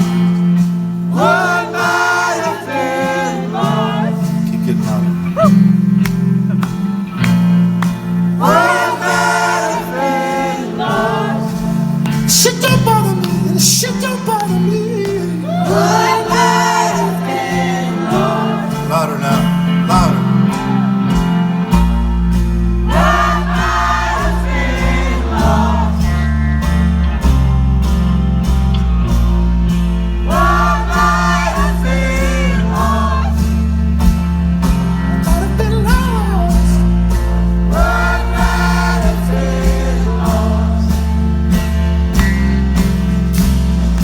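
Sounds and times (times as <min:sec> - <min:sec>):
voices singing a refrain together: 0:01.1 - 0:05.6, 0:08.4 - 0:12.4, 0:13.2 - 0:21.7, 0:22.8 - 0:26.6, 0:30.2 - 0:33.6, 0:37.6 - 0:41.6
steady drum beat: 0:03.6 - 0:44.0
low bass drone: 0:19.6 - 0:44.0.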